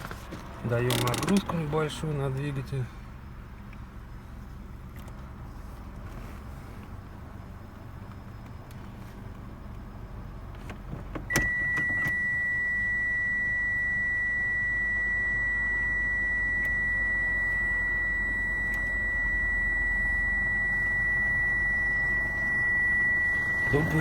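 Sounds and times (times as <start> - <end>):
car engine idling: 0.0 - 24.0
high-pitched electronic beep: 11.3 - 24.0.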